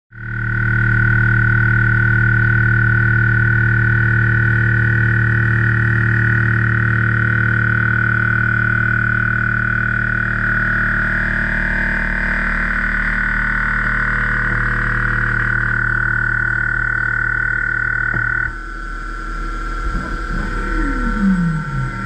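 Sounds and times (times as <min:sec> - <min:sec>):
milling machine cutting steel: 0:19.7 - 0:22.0.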